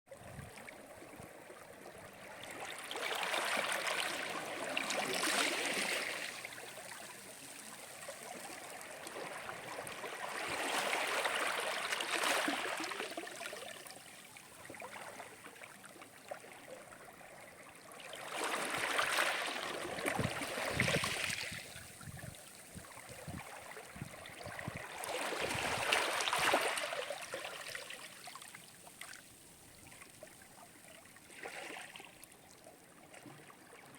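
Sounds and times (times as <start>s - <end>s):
sea waves breaking on shore: 2.1s - 6.5s, 8.8s - 13.2s.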